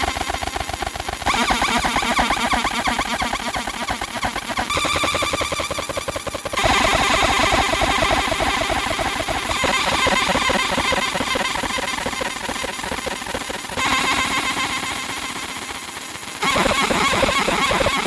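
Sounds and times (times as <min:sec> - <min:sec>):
laser rattling buzz: 0:01.3 - 0:15.0.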